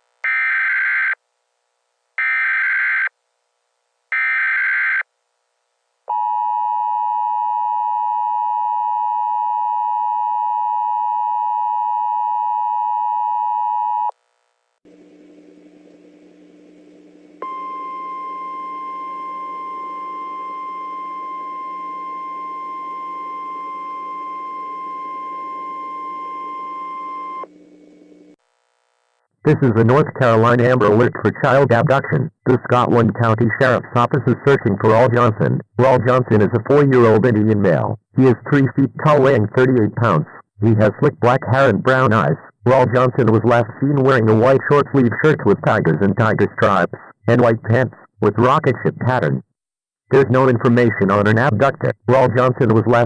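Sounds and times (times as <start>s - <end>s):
low hum: 14.2s - 28.4s
two-tone attention signal: 17.4s - 27.4s
steady high tone: 17.4s - 27.5s.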